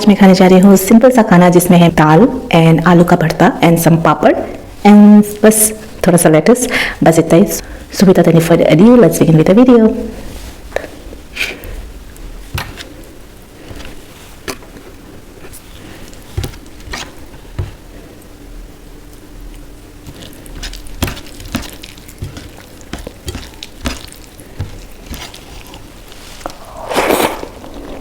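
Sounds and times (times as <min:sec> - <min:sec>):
soft chewing and squishing: 0:19.0 - 0:28.0.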